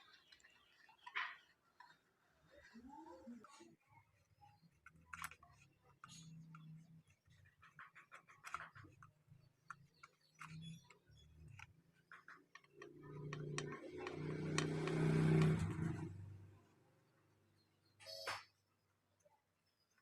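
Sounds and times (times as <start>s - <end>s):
motor hum with hiss: 13.4s - 16.2s.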